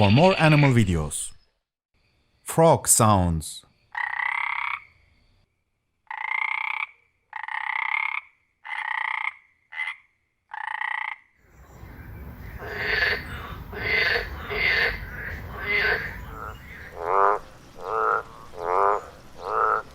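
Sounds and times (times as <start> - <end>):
frog croaking: 3.9 - 5.0, 6.0 - 19.9
steady rushing background: 11.5 - 17.0.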